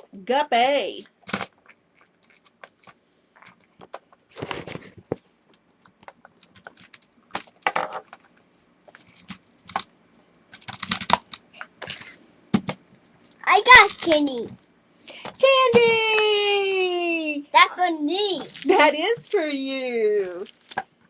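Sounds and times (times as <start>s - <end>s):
plastic rustling and clattering: 3.8s - 11.3s, 20.2s - 20.9s
plastic toys clicking and rattling: 6.0s - 9.9s, 10.5s - 12.1s, 13.5s - 14.6s.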